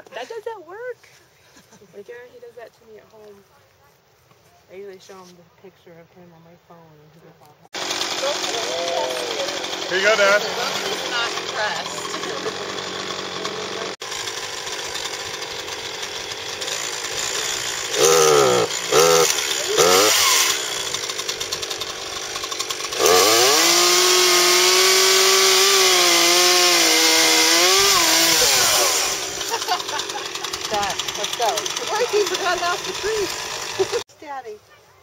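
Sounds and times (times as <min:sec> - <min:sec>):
chainsaw revving: 0:07.7 - 0:34.1.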